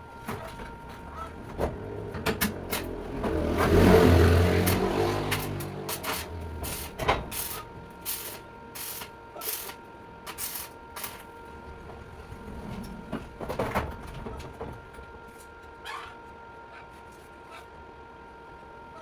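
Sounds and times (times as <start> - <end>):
passing vehicle engine: 1.4 - 7.7.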